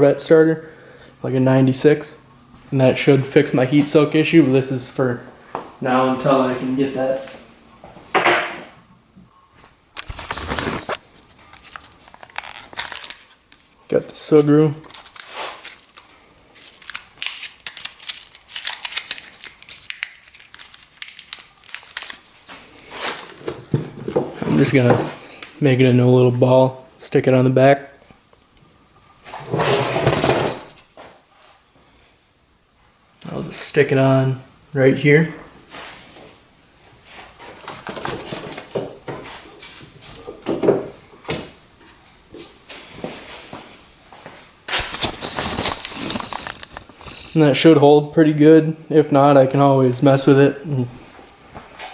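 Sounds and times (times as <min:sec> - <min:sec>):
foil pouch crinkling: 0:10.0 - 0:23.4, 0:44.7 - 0:47.4.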